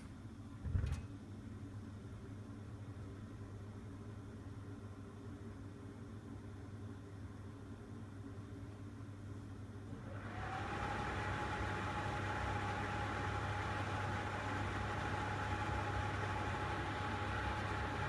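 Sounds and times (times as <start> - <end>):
heater blower rushing air: 10.0 - 13.4.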